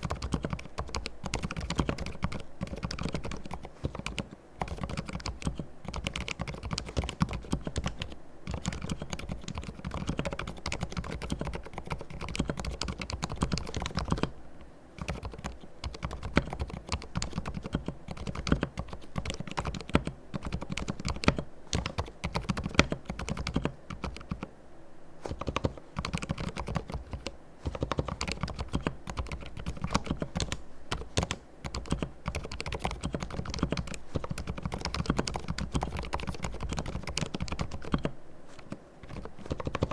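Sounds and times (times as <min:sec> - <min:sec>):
soft mechanical keyboard typing: 0:00.0 - 0:24.5, 0:25.2 - 0:39.9.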